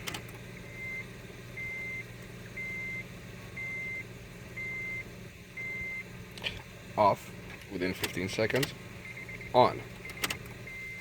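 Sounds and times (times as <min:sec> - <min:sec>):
high electronic beeps: 0:09.0 - 0:11.0.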